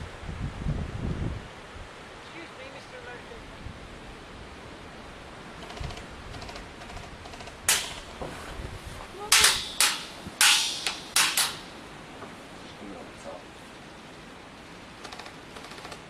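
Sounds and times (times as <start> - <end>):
airsoft gun shots: 7.7 - 8.2, 9.3 - 11.8.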